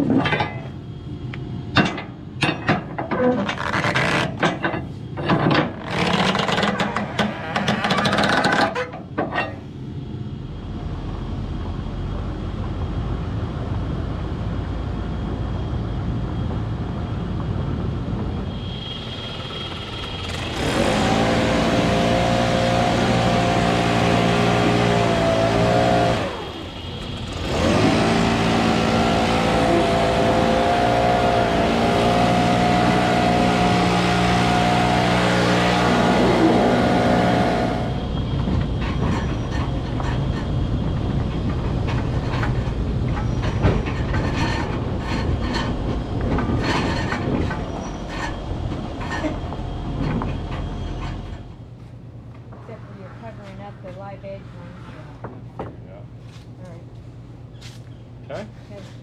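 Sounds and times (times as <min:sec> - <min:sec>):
engine revving: 0:18.7 - 0:38.2.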